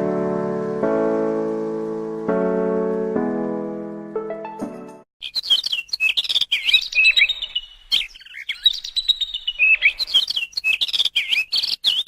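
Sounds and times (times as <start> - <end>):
birds chirping: 5.2 - 12.0.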